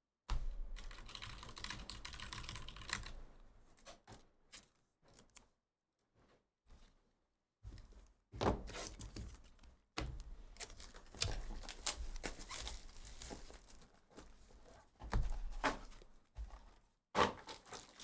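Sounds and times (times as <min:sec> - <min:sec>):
wrappers crinkling and tearing: 0:10.6 - 0:14.0, 0:17.4 - 0:18.0.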